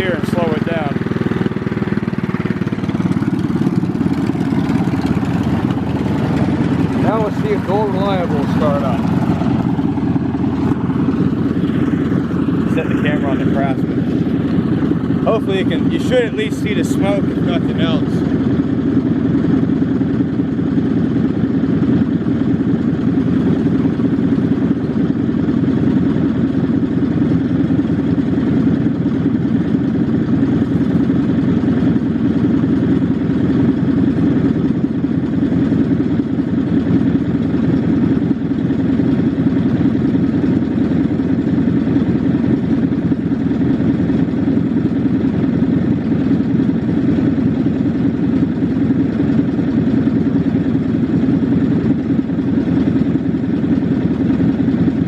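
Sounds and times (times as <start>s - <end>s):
lawn mower engine running: 0.0s - 55.0s.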